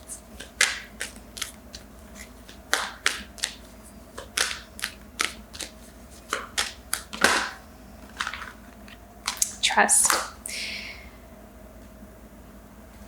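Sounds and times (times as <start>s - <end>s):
cards being shuffled: 0.0s - 9.6s.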